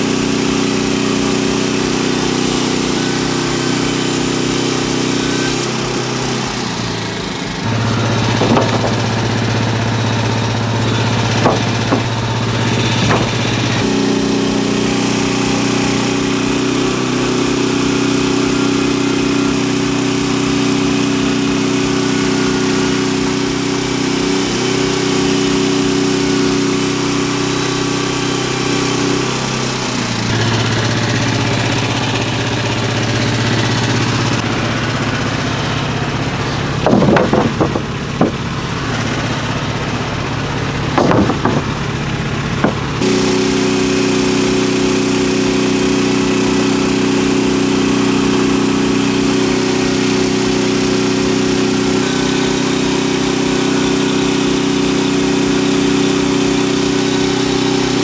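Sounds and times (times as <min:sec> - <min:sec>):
engine running: 0:00.0 - 0:58.0
sharp knocks: 0:08.2 - 0:09.4, 0:11.2 - 0:13.8, 0:36.8 - 0:38.5, 0:41.0 - 0:41.8, 0:42.6 - 0:43.0.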